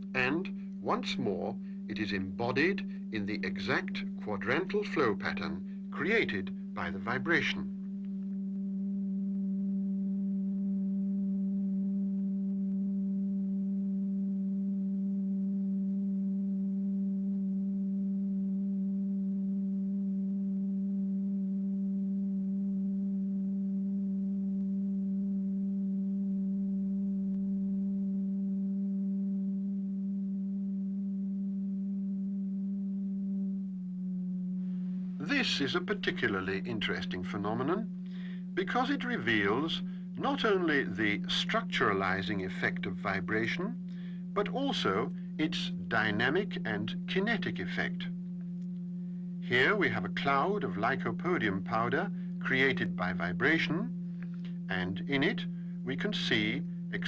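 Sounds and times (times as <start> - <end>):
steady low pure tone: 0.0 - 57.0.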